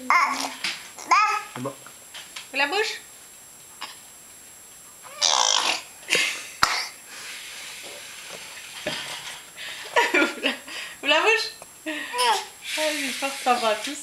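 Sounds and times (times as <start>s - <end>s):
child whining and grunting: 0.0s - 1.6s.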